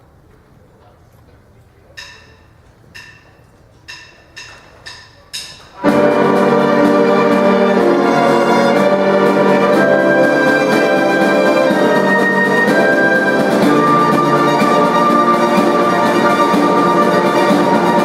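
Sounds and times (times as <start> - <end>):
orchestra with brass playing: 5.8 - 18.0.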